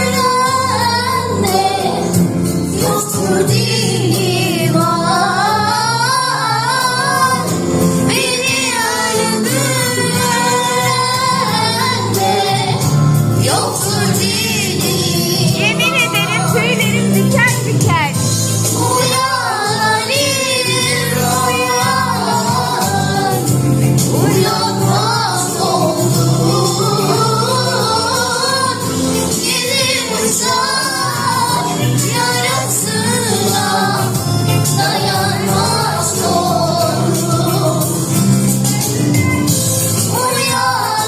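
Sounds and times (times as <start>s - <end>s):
backing music with low beat: 12.6s - 30.6s
person singing powerfully: 13.4s - 38.3s.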